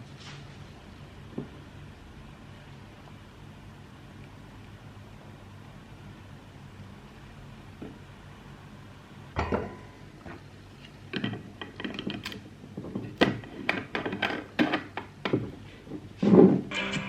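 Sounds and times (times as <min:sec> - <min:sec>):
dishes and utensils clinking: 0:09.4 - 0:10.1.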